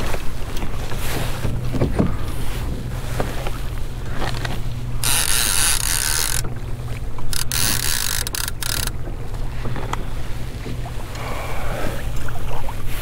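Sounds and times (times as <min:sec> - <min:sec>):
fishing reel ratcheting: 0:05.0 - 0:06.5, 0:07.3 - 0:09.0.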